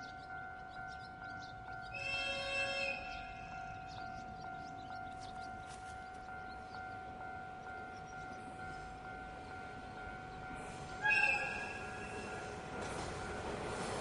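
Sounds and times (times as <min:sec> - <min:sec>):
level crossing alarm ringing: 0:00.0 - 0:13.5
steam locomotive whistle: 0:01.9 - 0:03.1, 0:11.0 - 0:12.3.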